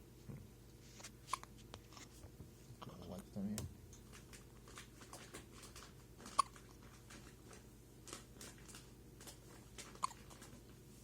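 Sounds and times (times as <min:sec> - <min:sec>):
baby hiccuping: 0:06.2 - 0:06.6, 0:10.0 - 0:10.4.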